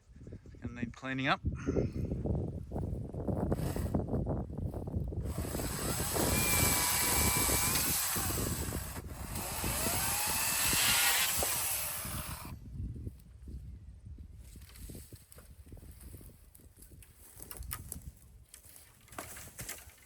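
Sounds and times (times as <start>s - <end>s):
chainsaw cutting at high revs: 5.3s - 12.6s.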